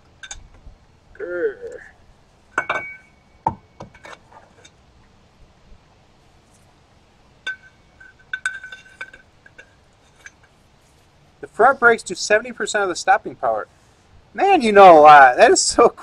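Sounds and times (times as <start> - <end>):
metal pieces clinking: 7.4 - 10.5.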